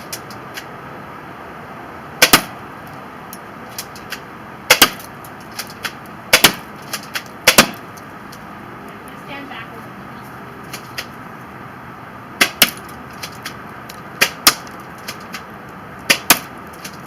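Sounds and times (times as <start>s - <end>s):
toy gun firing sharp snaps: 14.2s - 15.4s.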